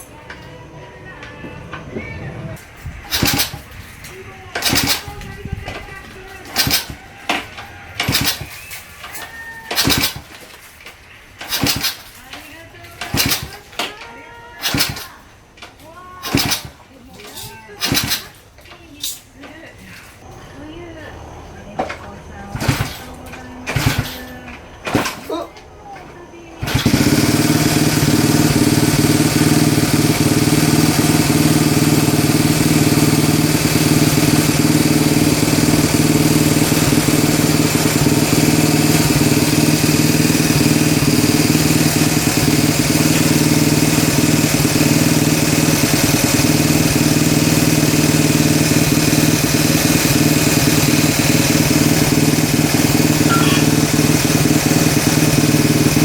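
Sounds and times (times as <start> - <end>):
small motorbike engine idling: 0.0 - 18.9, 20.1 - 56.0.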